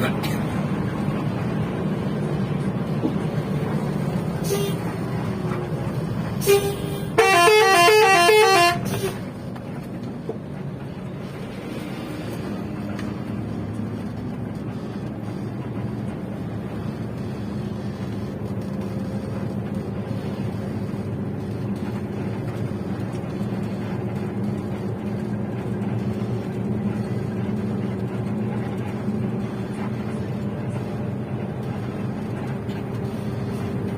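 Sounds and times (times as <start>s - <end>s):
low engine rumble: 0.0s - 33.9s
bus horn toot: 4.4s - 5.0s, 6.4s - 9.3s
warbling multi-tone bus horn: 4.4s - 5.4s, 6.3s - 9.4s.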